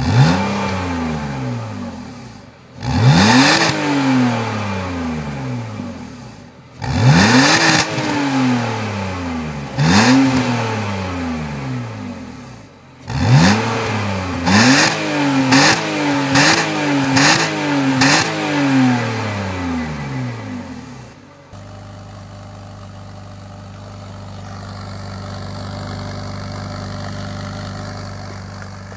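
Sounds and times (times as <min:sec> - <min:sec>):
car engine revving: 0:00.0 - 0:28.9
car engine idling: 0:19.1 - 0:28.9.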